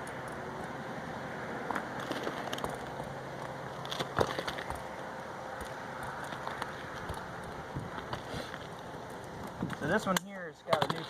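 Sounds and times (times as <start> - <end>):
steady outdoor hiss: 0.0 - 11.0
roofing shingles clicking and scraping: 1.7 - 5.0, 5.6 - 11.0.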